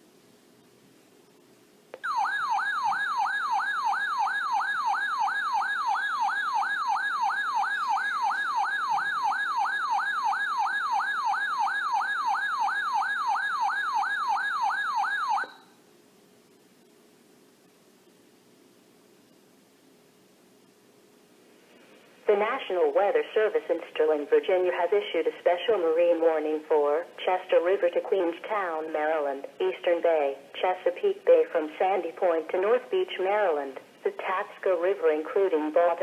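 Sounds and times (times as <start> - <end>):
faint radio hiss: 0.0 - 5.7, 15.6 - 36.0.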